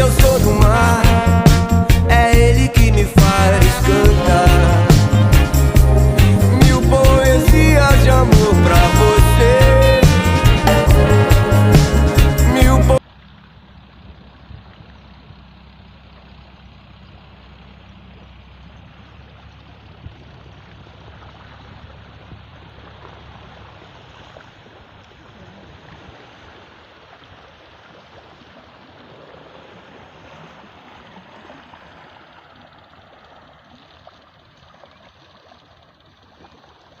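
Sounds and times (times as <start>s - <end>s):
low rumble: 0.0s - 26.0s
sea water rushing and gurgling: 0.0s - 37.0s.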